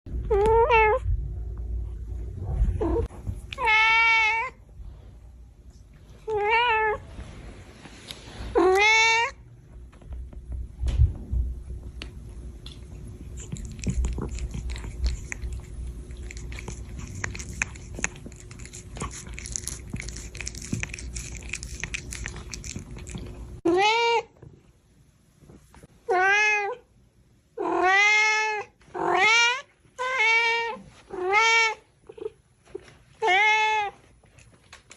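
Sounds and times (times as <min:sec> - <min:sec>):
cat meowing: 0:02.9 - 0:04.6, 0:23.7 - 0:24.3.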